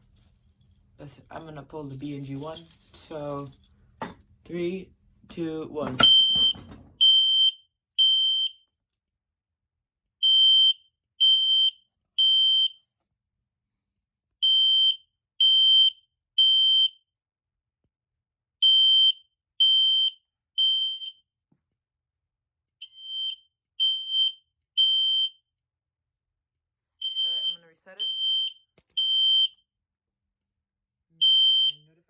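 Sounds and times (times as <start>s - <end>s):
fire alarm horn blasts: 6.0s - 8.5s, 27.0s - 29.5s.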